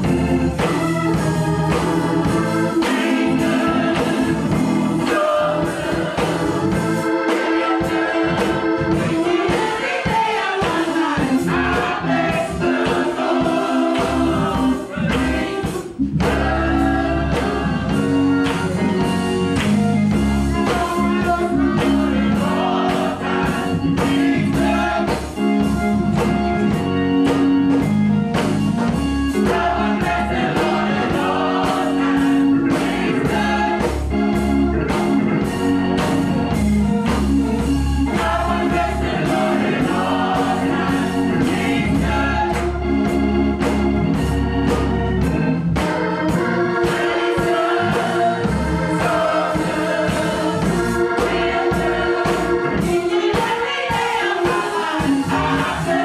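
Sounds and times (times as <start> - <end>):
choir singing: 0.0 - 19.7, 20.4 - 25.7, 29.3 - 34.4, 37.6 - 43.3, 45.9 - 56.0
band accompaniment: 0.0 - 56.0.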